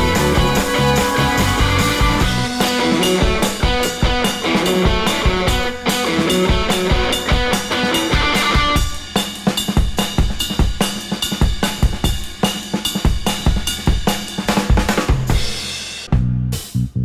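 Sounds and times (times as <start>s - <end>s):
bass line: 0.0s - 3.1s, 16.1s - 17.0s
drum kit beat: 0.0s - 17.0s.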